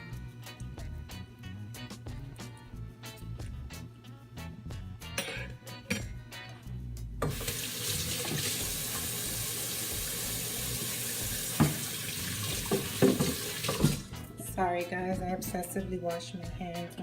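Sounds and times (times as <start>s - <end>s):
water running into sink: 7.2s - 14.2s.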